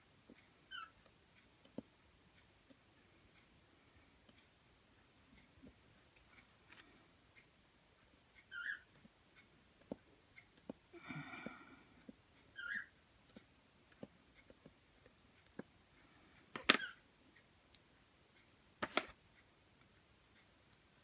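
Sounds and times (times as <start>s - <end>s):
plastic tools clicking on tabletop: 16.6s - 17.0s, 18.8s - 19.2s.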